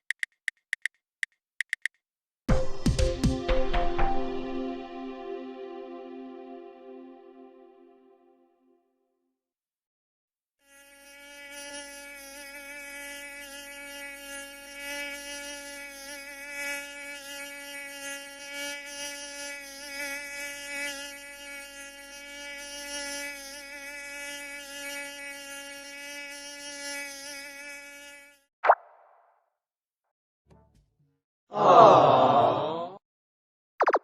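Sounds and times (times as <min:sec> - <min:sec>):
insect buzzing: 0:10.6 - 0:28.5.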